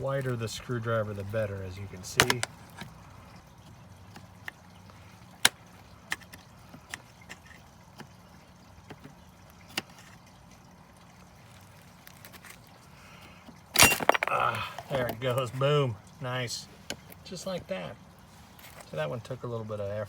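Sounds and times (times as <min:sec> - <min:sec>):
metal clip snapping off: 0:02.2 - 0:02.9, 0:13.8 - 0:14.3.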